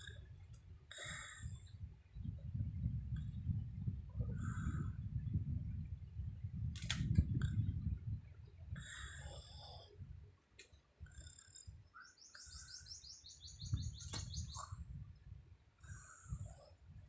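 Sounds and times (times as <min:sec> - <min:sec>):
small birds chirping: 0:10.5 - 0:16.5.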